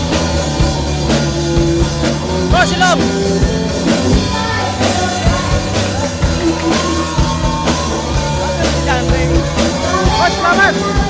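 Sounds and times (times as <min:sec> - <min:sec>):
rock band playing: 0:00.0 - 0:11.0
steady drum beat: 0:00.0 - 0:11.0
person singing: 0:04.2 - 0:11.0.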